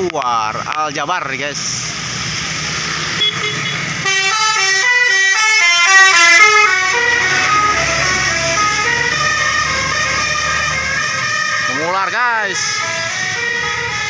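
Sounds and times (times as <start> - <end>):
low bus rumble: 0.0 - 14.0
musical bus horn melody: 3.2 - 10.5.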